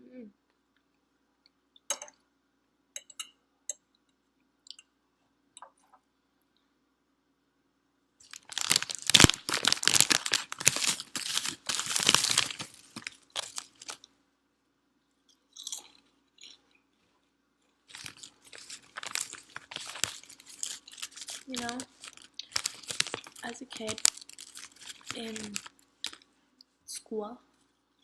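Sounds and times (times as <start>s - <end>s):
chewing potato chips: 8.2s - 14.1s, 15.3s - 26.3s.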